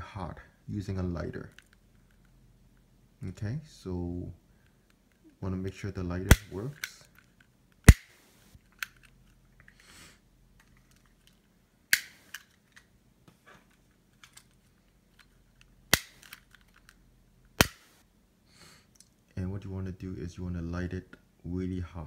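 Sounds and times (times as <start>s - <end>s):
lighter clicks: 7.9s - 8.1s.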